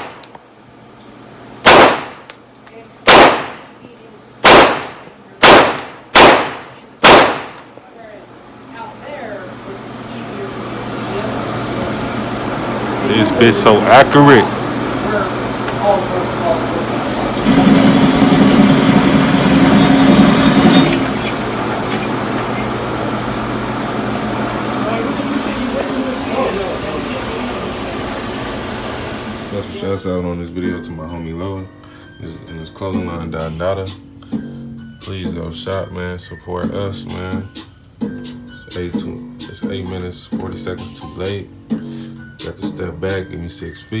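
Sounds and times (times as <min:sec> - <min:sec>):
pistol shots: 0:01.6 - 0:02.3, 0:03.1 - 0:03.7, 0:04.4 - 0:07.7
engine-like running noise: 0:08.8 - 0:30.1.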